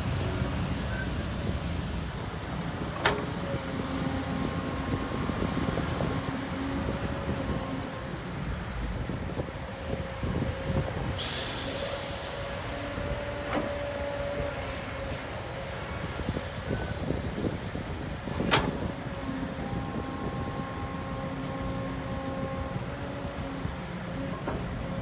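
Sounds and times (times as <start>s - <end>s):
diesel machinery running: 0.0s - 25.0s
hissing air burst: 11.2s - 12.5s.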